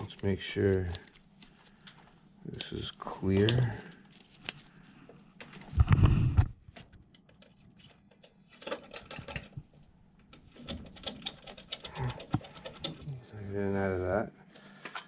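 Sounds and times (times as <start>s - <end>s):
light clicks of small parts: 0.1s - 5.7s.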